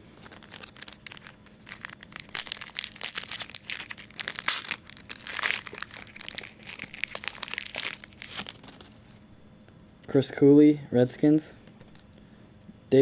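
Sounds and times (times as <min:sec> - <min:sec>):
wrapper crinkling: 0:00.0 - 0:09.2
cards being handled: 0:00.2 - 0:09.1.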